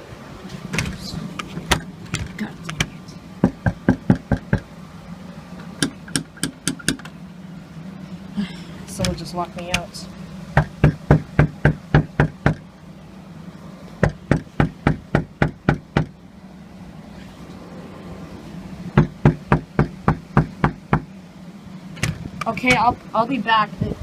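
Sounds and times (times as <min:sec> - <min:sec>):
steady low hum: 0:00.0 - 0:24.0
hard knocking on a door: 0:03.4 - 0:04.6, 0:10.6 - 0:12.6, 0:14.0 - 0:16.1, 0:19.0 - 0:21.1.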